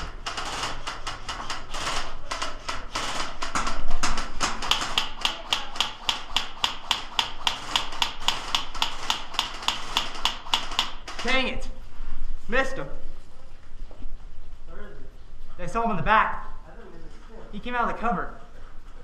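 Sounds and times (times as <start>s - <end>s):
airsoft gun rapid shots: 0.0s - 11.4s.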